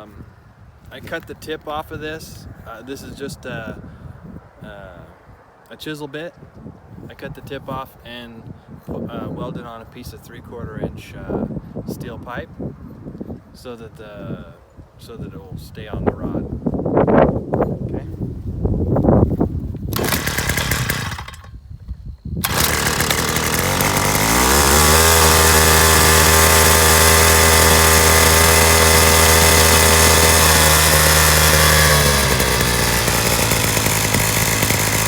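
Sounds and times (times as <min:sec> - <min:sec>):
jackhammer engine starting and revving: 0:19.9 - 0:21.6, 0:22.4 - 0:35.0.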